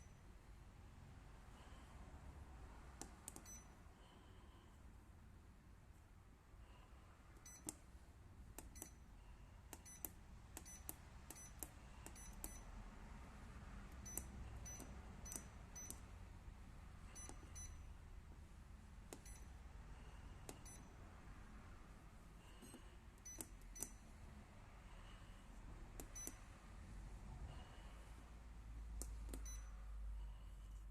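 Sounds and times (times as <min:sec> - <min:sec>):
faint low hum: 0:00.0 - 0:30.9
keypad beeping: 0:03.0 - 0:03.8, 0:07.4 - 0:07.8, 0:08.6 - 0:09.1, 0:09.7 - 0:12.7, 0:13.9 - 0:16.1, 0:17.1 - 0:18.0, 0:19.1 - 0:19.6, 0:20.4 - 0:21.0, 0:22.6 - 0:24.1, 0:26.0 - 0:26.4, 0:29.2 - 0:29.7.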